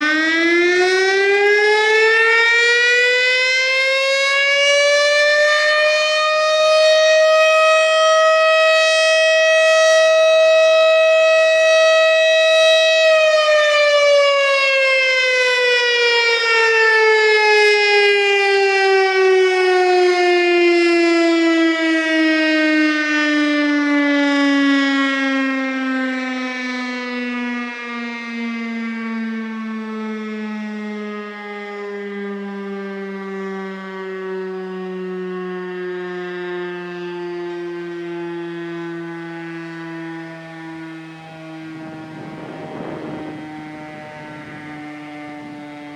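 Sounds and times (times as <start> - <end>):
outdoor warning siren: 0.0 - 45.9.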